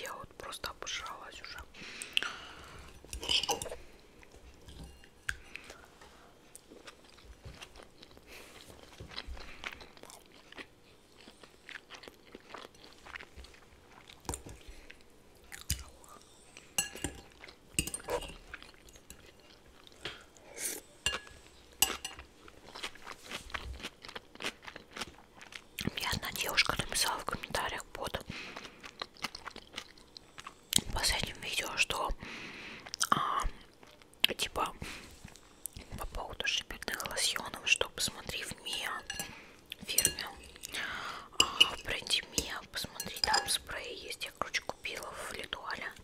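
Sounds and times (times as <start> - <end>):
crunchy salad chewing: 2.0 - 30.9.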